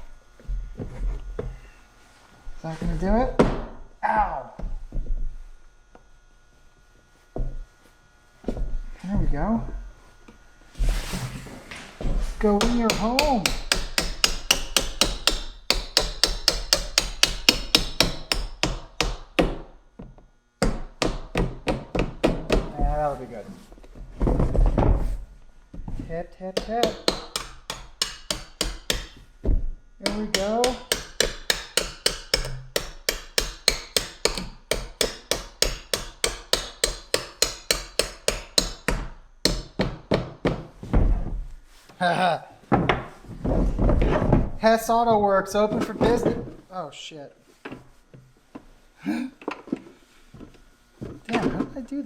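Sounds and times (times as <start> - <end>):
rapid hammer taps: 12.5 - 19.7, 20.6 - 22.8, 26.5 - 29.2, 30.0 - 40.6
hammer tapping plastic box: 30.1 - 38.9.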